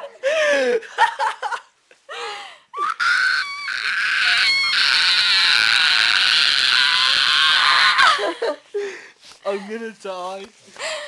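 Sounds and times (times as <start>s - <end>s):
people shrieking: 2.8s - 8.4s.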